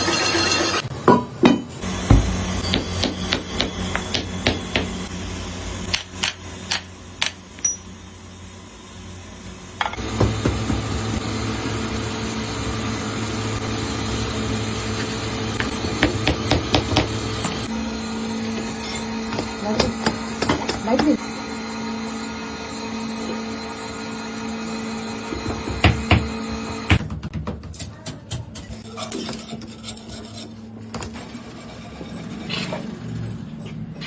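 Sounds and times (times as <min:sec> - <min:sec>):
hammer striking metal: 0:01.1 - 0:05.1
steady machine hum: 0:01.7 - 0:27.0.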